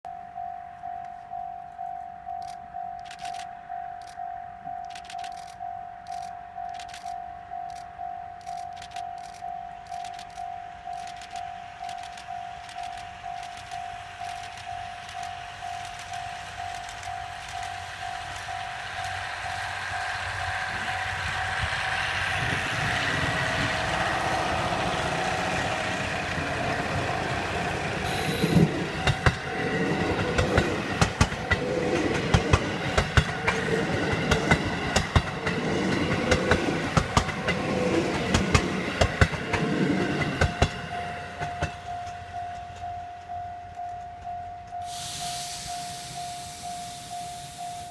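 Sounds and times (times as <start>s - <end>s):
diesel train approaching: 0.1s - 47.9s
train wheels knocking on rail joints: 21.2s - 43.3s.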